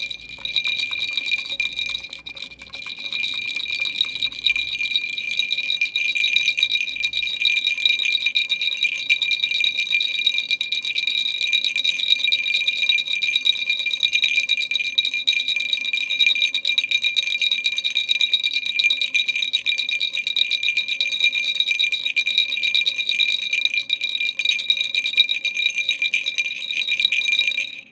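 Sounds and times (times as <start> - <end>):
baby rattle shaking: 0.0 - 8.6.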